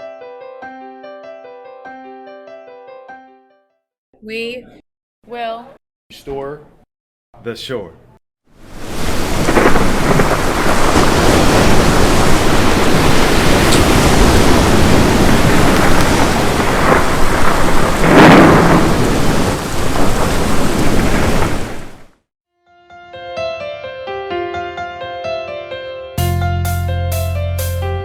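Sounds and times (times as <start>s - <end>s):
heavy rain: 8.6s - 22.2s
rolling thunder: 8.6s - 22.2s.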